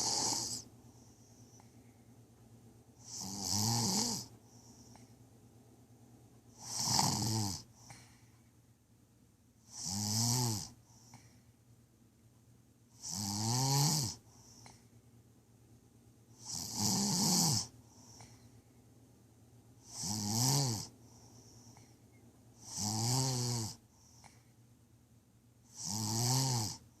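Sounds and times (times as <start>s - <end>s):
person snoring: 0.0s - 0.7s, 3.0s - 4.3s, 6.6s - 7.7s, 9.7s - 10.8s, 13.0s - 14.2s, 16.4s - 17.7s, 19.8s - 20.9s, 22.6s - 23.8s, 25.7s - 26.8s
faint breath out: 7.7s - 8.6s, 10.8s - 11.6s, 17.8s - 18.7s.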